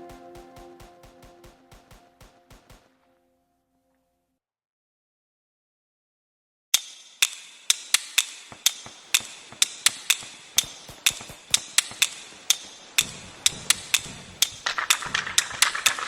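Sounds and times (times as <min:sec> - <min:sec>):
fireworks crackle: 0:14.6 - 0:16.0.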